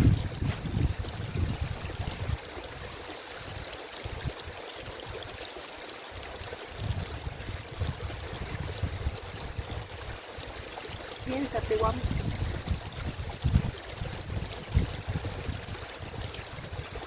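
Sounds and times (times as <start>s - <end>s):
wind buffeting microphone: 0.0s - 2.9s, 6.7s - 17.0s
brook and small waterfall: 0.0s - 17.0s.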